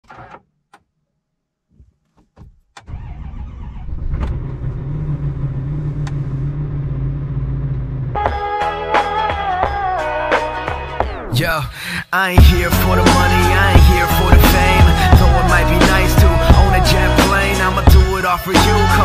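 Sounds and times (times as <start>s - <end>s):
vehicle engine idling: 3.0s - 8.2s
music: 8.2s - 11.4s, 12.3s - 19.0s.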